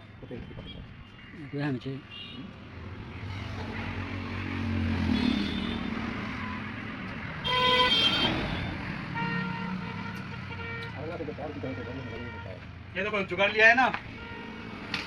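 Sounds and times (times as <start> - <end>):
vehicle engine passing by: 2.8 - 6.4
vehicle horn: 5.1 - 6.7, 7.4 - 12.6.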